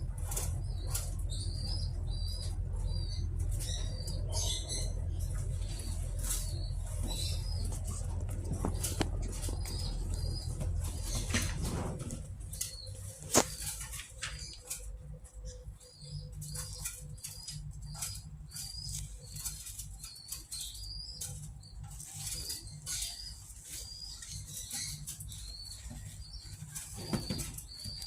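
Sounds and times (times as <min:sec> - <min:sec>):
birds fluttering wings: 0:05.5 - 0:14.9.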